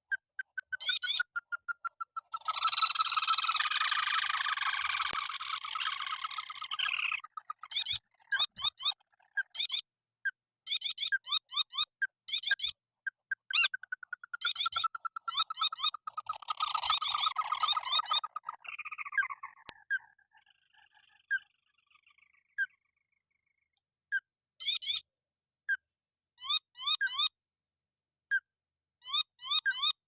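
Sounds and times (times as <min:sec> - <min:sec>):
rail bird squeaky calls: 0:00.4 - 0:09.8, 0:10.7 - 0:12.7, 0:13.4 - 0:22.8, 0:24.6 - 0:25.0, 0:29.1 - 0:30.0.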